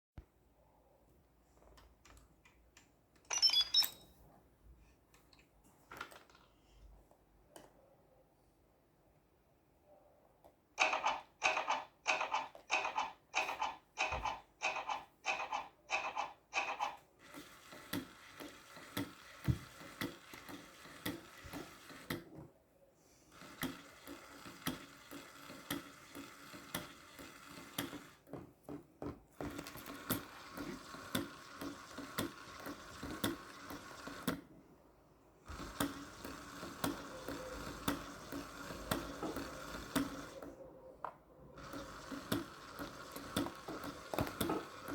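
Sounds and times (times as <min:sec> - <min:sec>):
whirring rattle with fast ticks: 0:11.5 - 0:22.2, 0:23.4 - 0:28.2, 0:29.6 - 0:34.4, 0:35.5 - 0:40.5, 0:41.6 - 0:44.9.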